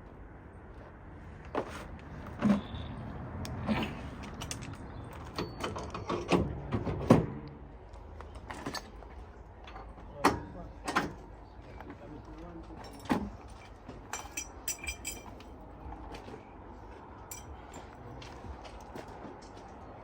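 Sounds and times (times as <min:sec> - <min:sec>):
metallic tool clinks and knocks: 0:12.8 - 0:15.5, 0:17.3 - 0:18.0.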